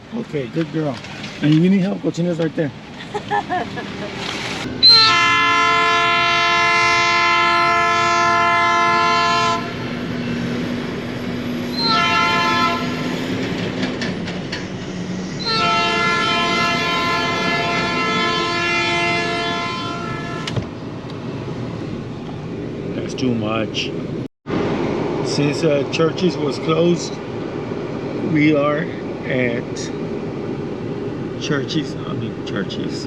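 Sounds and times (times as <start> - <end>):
train horn blasts: 4.8 - 9.8, 11.7 - 13.1, 15.4 - 20.6.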